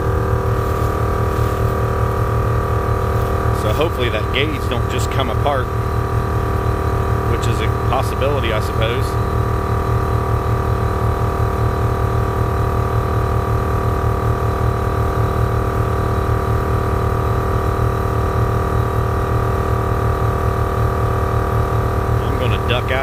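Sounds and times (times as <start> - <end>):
air compressor running: 0.0 - 23.0.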